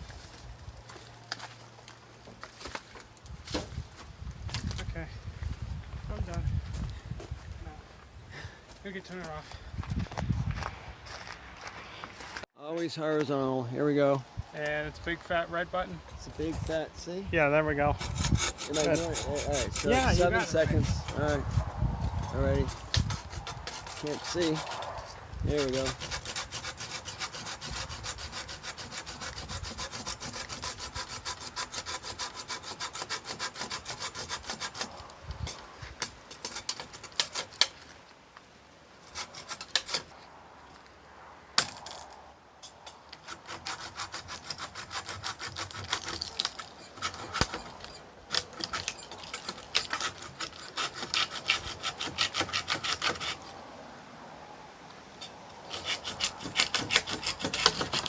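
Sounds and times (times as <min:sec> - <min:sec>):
hand saw cutting wood: 0:17.9 - 0:38.0, 0:39.0 - 0:40.2, 0:42.9 - 0:53.6, 0:55.2 - 0:58.0.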